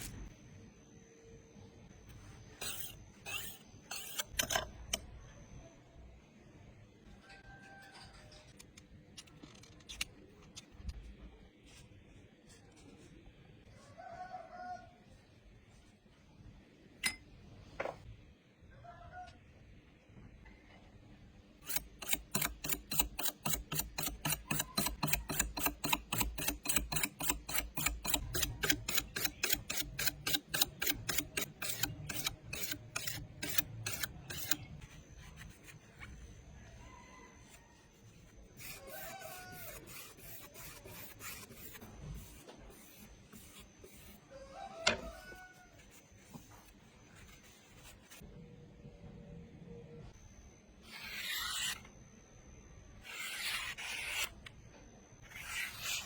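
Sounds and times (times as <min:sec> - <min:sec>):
knife scraping across a sharpener: 0:02.5 - 0:05.0, 0:21.6 - 0:36.2, 0:37.4 - 0:44.2, 0:50.8 - 0:51.9, 0:53.0 - 0:54.5, 0:55.2 - 0:56.0.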